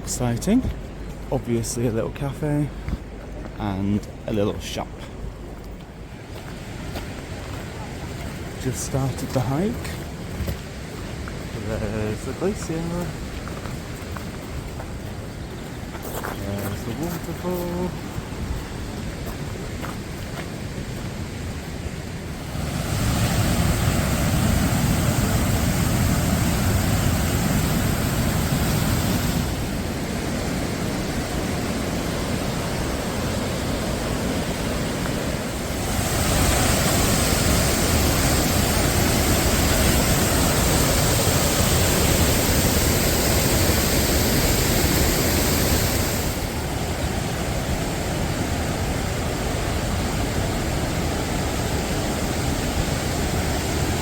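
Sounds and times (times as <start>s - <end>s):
waterfall rushing: 22.2s - 54.0s.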